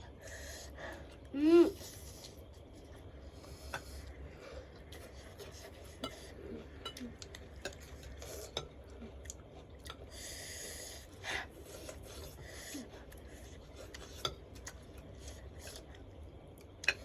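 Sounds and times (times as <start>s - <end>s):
wheezy hissing breaths: 0.0s - 2.4s, 3.2s - 6.6s, 10.0s - 13.7s.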